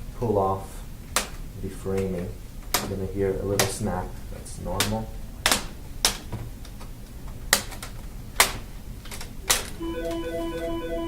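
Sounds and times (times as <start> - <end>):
plastic clips snapping: 1.1 - 9.8
musical tone with pulsing notes: 9.8 - 11.0.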